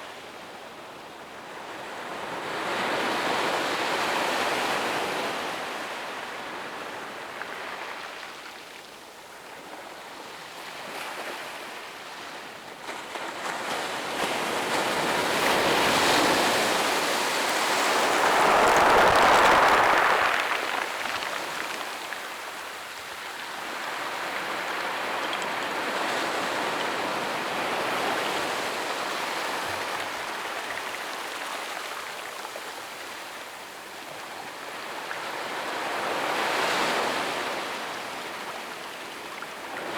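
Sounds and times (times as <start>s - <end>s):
ocean waves breaking on beach: 13.0s - 30.9s.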